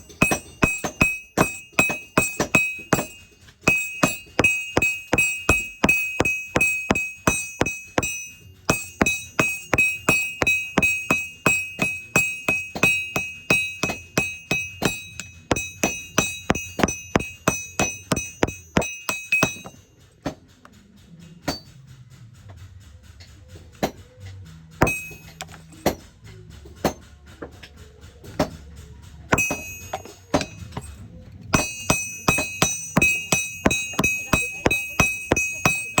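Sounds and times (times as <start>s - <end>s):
hammer striking metal on anvil: 0.0s - 20.4s, 21.4s - 21.8s, 24.8s - 26.1s, 29.3s - 31.0s, 31.6s - 36.0s.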